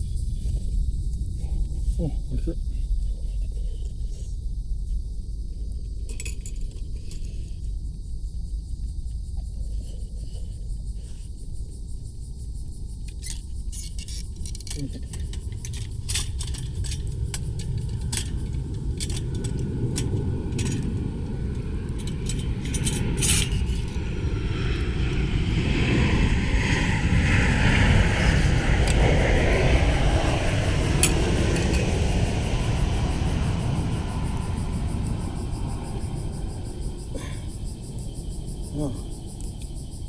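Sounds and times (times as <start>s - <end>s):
low rumble: 14.3s - 40.0s.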